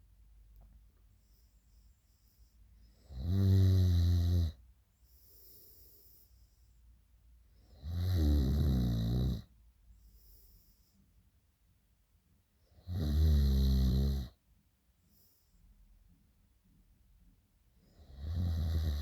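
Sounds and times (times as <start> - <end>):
quiet breathing: 0.7 - 3.2, 4.5 - 7.7, 9.4 - 11.4, 14.9 - 16.2
person snoring: 7.7 - 9.5, 18.1 - 19.0.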